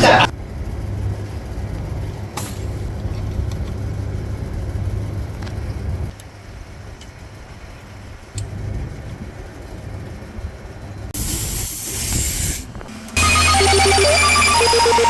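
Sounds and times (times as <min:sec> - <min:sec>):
gas hissing from a line: 0:11.2 - 0:13.2
electronic background music: 0:12.9 - 0:15.0.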